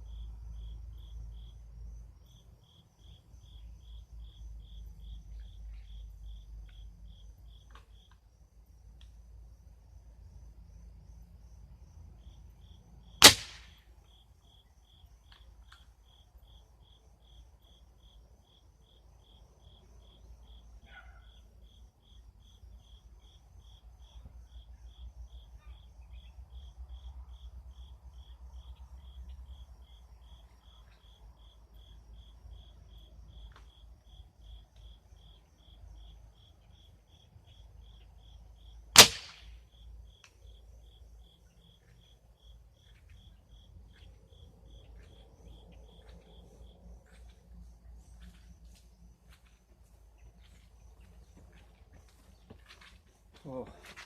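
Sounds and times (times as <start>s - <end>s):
crickets chirping: 0.0s - 54.0s
air rifle shots: 13.2s - 13.8s, 39.0s - 39.6s.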